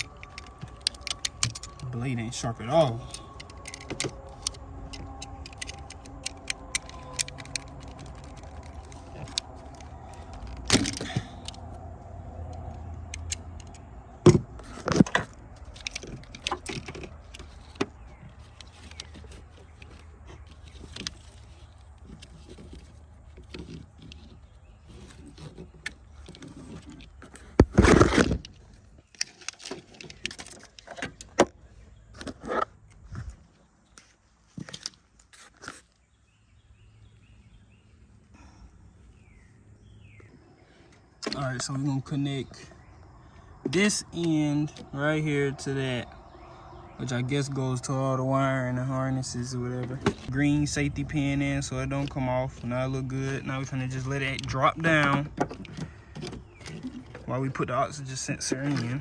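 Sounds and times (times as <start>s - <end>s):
tools clicking and rattling: 0.0s - 11.8s, 12.4s - 31.5s, 51.5s - 59.0s.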